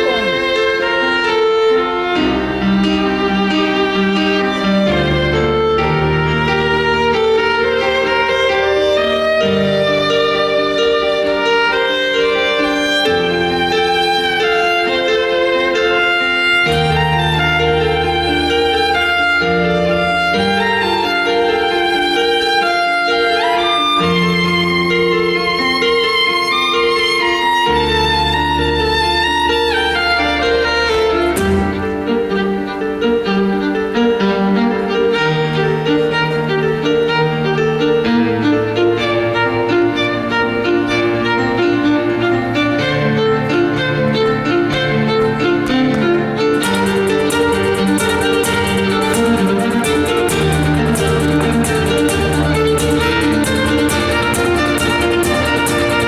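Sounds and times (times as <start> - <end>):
violin melody: 0.0 - 56.0
backing track with bass notes: 46.0 - 56.0
hi-hat beat: 46.5 - 56.0.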